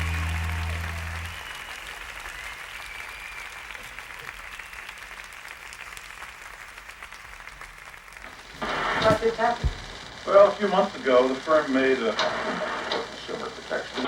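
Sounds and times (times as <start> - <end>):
held low music notes: 0.0 - 1.4
audience applause: 0.0 - 9.0.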